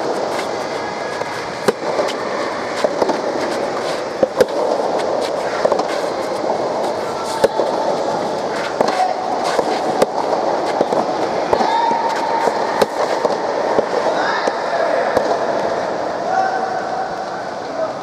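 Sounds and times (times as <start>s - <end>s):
crowd murmur: 0.0s - 18.0s.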